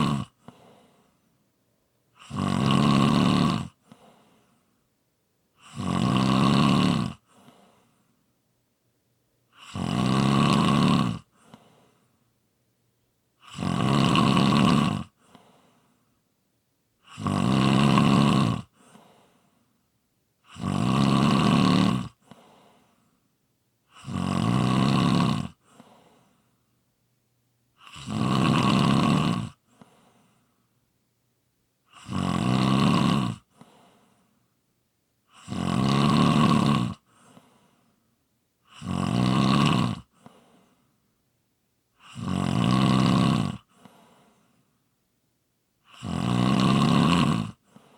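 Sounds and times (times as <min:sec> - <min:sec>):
person snoring: 0:00.0 - 0:01.1, 0:02.2 - 0:04.5, 0:05.6 - 0:07.9, 0:09.5 - 0:12.0, 0:13.4 - 0:15.8, 0:17.0 - 0:19.4, 0:20.4 - 0:23.0, 0:23.9 - 0:26.4, 0:27.8 - 0:30.3, 0:31.9 - 0:34.2, 0:35.3 - 0:37.7, 0:38.6 - 0:40.8, 0:42.0 - 0:44.4, 0:45.8 - 0:47.9.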